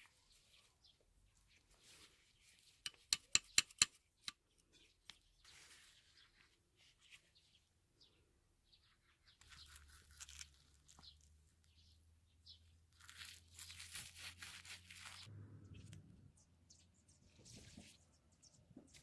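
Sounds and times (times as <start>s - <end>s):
faint scratchy rustling and scraping: 0.0s - 3.1s, 4.5s - 7.7s, 8.8s - 11.9s, 12.9s - 19.0s
low steady hum: 15.3s - 17.3s.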